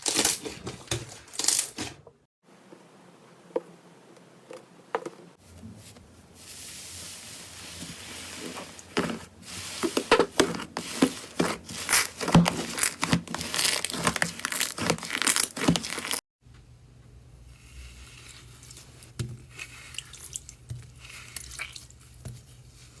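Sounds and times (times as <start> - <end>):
slime squishing and crackling: 9.8 - 16.2.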